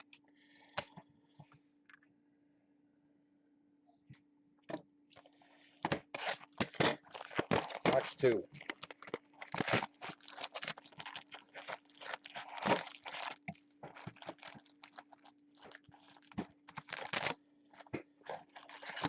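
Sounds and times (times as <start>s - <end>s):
plastic wrapping tearing and crinkling: 6.2s - 19.0s.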